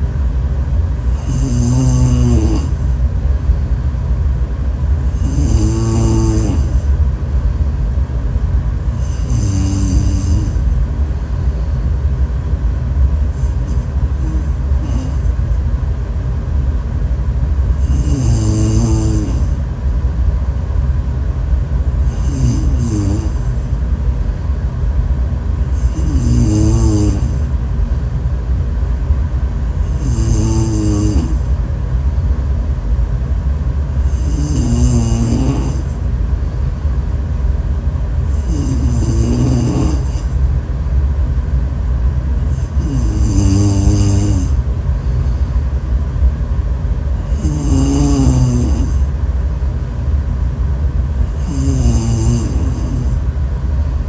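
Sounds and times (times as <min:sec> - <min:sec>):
steady low rumble: 0:00.0 - 0:54.0
person snoring: 0:01.1 - 0:02.8, 0:05.0 - 0:06.9, 0:09.0 - 0:10.8, 0:13.3 - 0:15.4, 0:17.8 - 0:19.6, 0:22.0 - 0:23.7, 0:25.7 - 0:27.5, 0:29.8 - 0:31.5, 0:34.0 - 0:36.0, 0:38.3 - 0:40.4, 0:42.5 - 0:44.6, 0:47.2 - 0:49.1, 0:51.2 - 0:53.2.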